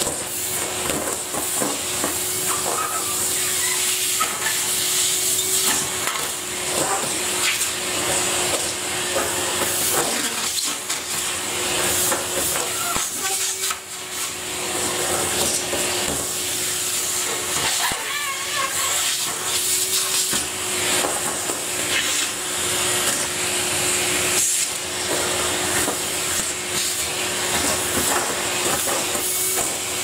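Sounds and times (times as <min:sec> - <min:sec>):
vacuum cleaner running: 0:00.0 - 0:30.0.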